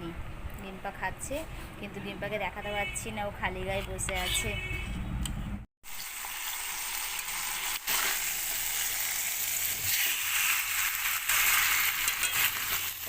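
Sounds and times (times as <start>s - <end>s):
food sizzling in hot oil: 5.8s - 13.0s.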